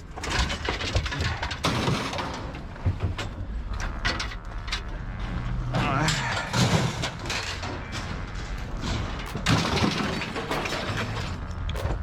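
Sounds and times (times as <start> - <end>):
junk clattering and scraping: 0.0 - 12.0
loud thumps: 6.5 - 12.0.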